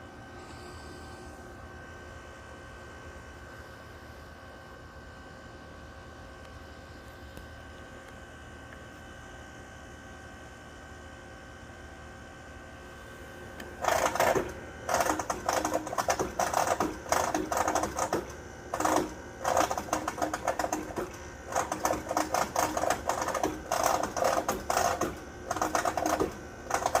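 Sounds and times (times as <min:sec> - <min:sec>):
air conditioner unit humming: 0:00.0 - 0:27.0
loud rapid rattling: 0:13.8 - 0:27.0.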